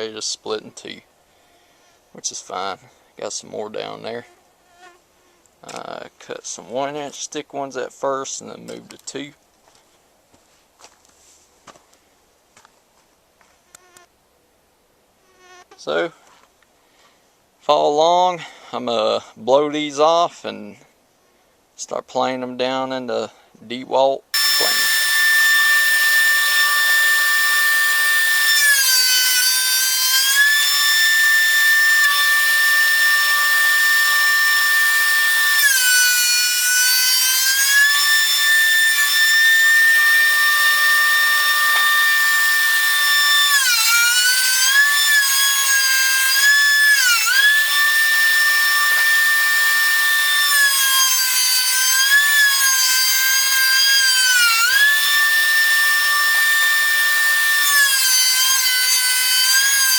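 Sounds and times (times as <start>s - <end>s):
thickness planer motor whine: 24.4s - 59.9s.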